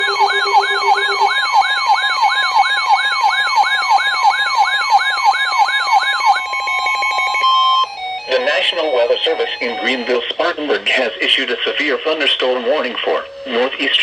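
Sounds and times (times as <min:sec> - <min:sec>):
steady electronic tone: 0:00.0 - 0:01.7
electronic alert siren sweeping: 0:00.0 - 0:10.2.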